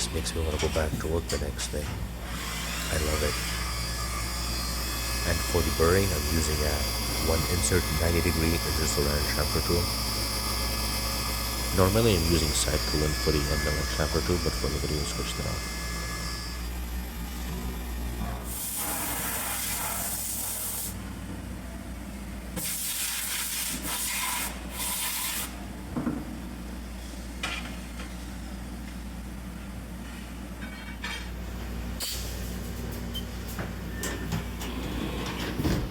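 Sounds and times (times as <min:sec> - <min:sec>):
milling machine hum: 0:00.0 - 0:22.5.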